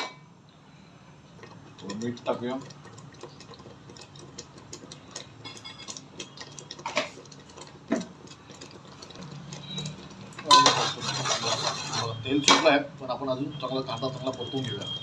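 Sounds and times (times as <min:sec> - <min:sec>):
paste frying and spattering in oil: 0:01.3 - 0:12.8.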